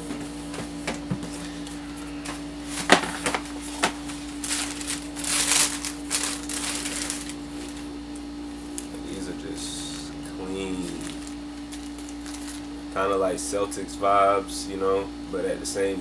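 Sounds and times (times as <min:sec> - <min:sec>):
steady low hum: 0:00.0 - 0:16.0
rustling: 0:02.3 - 0:08.0, 0:10.8 - 0:12.8.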